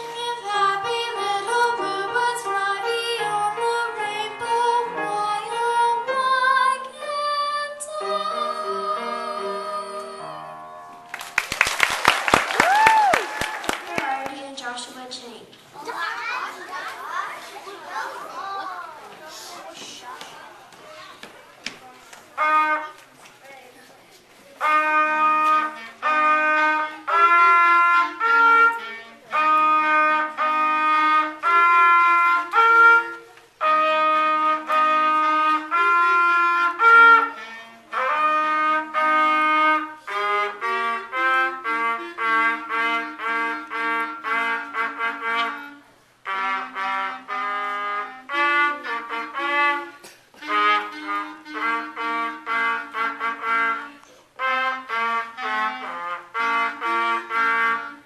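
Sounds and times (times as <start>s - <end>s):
saxophone duet: 0.0s - 11.0s, 22.4s - 23.0s, 24.6s - 58.0s.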